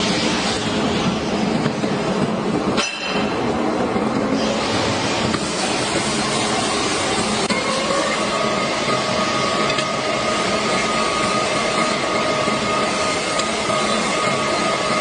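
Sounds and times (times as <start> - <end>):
metal lathe whining: 4.0 - 15.0.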